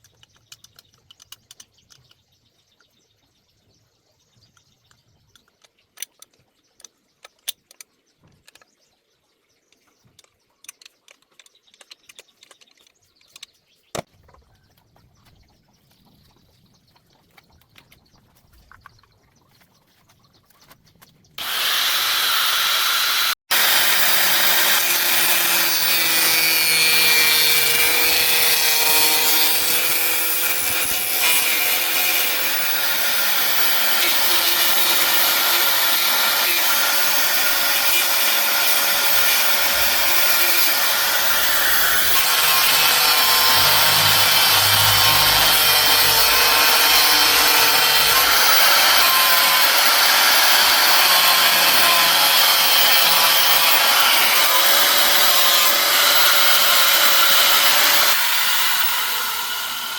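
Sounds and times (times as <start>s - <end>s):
electric power tool running: 21.4s - 59.9s.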